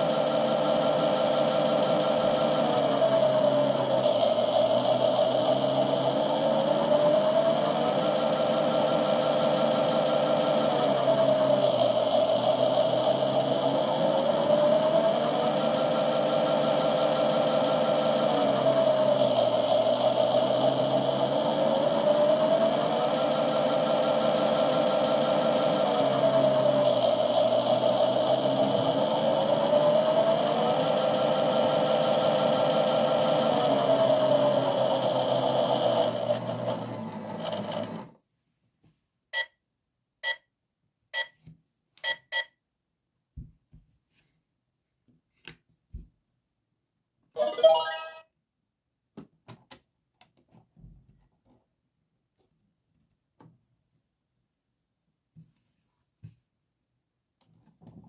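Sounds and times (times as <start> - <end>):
washing machine motor whine: 0.0 - 38.2
short beeps: 42.0 - 42.6.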